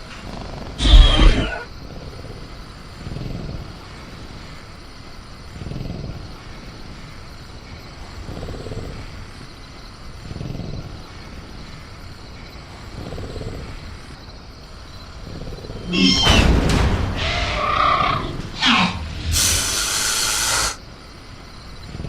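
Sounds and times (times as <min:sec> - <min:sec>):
crickets chirring: 0:00.0 - 0:22.0
creature growling low: 0:00.8 - 0:01.7, 0:17.1 - 0:20.8.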